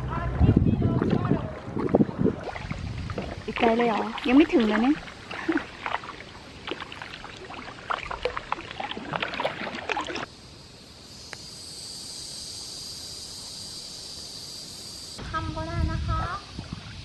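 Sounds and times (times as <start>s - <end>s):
paddle splashing water: 1.0s - 10.3s.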